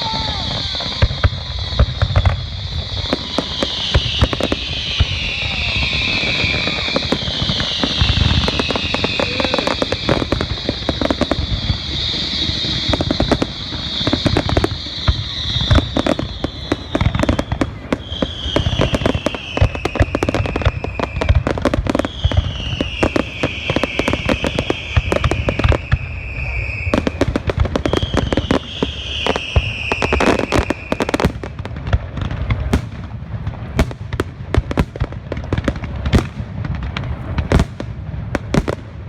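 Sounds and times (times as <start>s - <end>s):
firework whistles falling in pitch: 0.0s - 31.6s
fireworks bangs and crackles: 0.0s - 39.0s.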